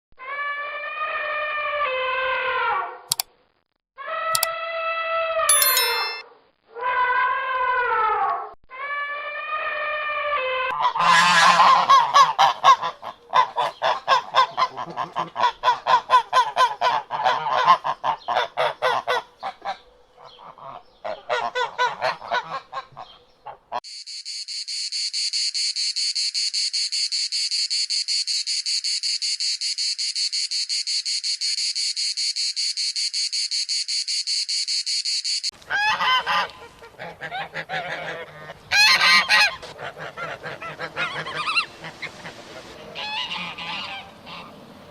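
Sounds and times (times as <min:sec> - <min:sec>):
high-pitched trill: 0:05.5 - 0:06.2.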